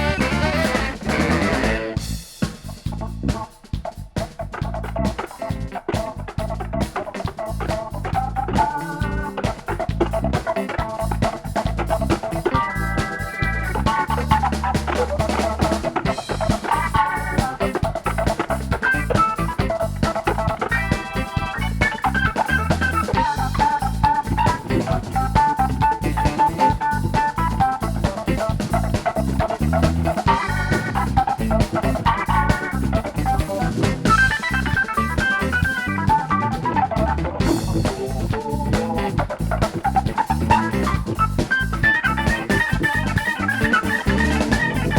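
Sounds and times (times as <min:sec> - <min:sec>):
guitar chords: 0:00.0 - 0:02.1
bass line: 0:00.0 - 0:44.9
drum kit beating: 0:00.0 - 0:44.9
live band playing: 0:00.0 - 0:44.9.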